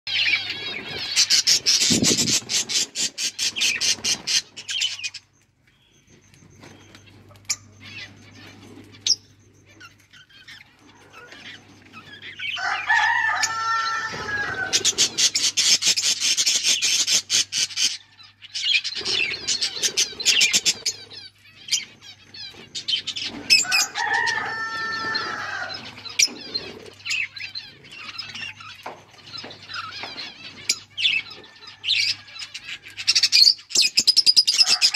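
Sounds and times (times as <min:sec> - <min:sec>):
budgies chirping and chattering: 0:00.1 - 0:34.9.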